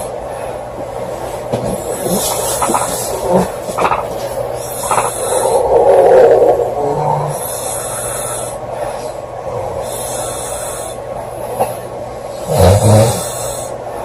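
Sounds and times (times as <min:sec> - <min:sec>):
steady low hum: 0:00.0 - 0:14.0
girl snoring: 0:04.6 - 0:08.5, 0:12.4 - 0:13.7.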